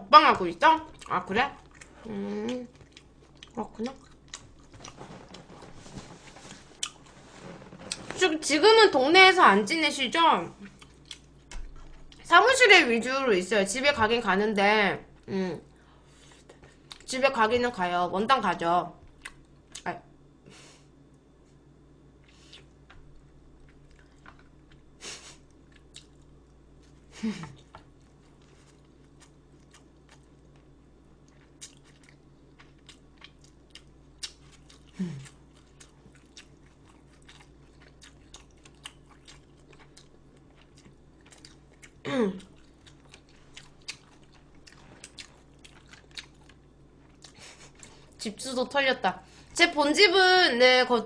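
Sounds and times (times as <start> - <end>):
person chewing food: 0.9 - 8.2, 10.6 - 12.2, 22.1 - 48.2.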